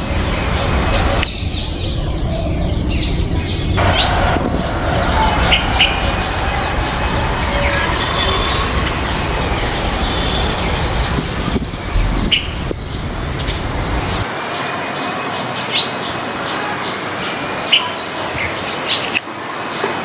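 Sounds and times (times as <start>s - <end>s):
birds chirping: 0.0s - 14.3s
loud steady noise: 0.0s - 14.8s.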